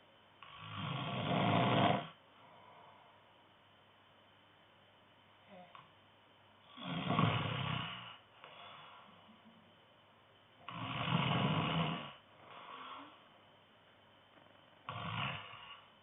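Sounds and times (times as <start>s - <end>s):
man snoring: 0.4s - 2.2s, 6.7s - 8.2s, 10.6s - 13.1s, 14.4s - 15.9s
soft breath: 2.3s - 3.4s, 8.0s - 9.6s, 12.3s - 13.4s.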